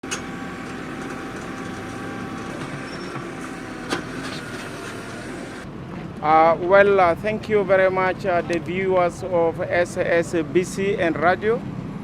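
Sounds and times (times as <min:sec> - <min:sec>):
engines running: 0:00.0 - 0:05.7
whining tones: 0:00.0 - 0:05.7.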